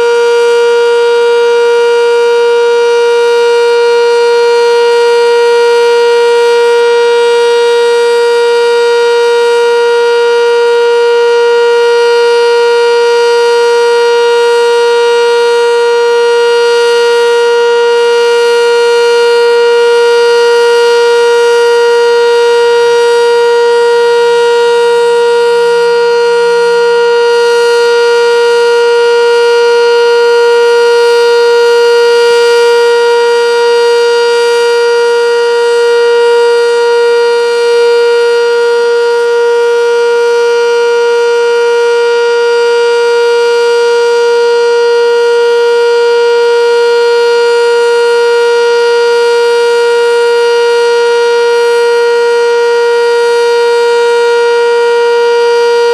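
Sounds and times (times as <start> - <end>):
tornado siren steady tone: 0.0 - 55.9.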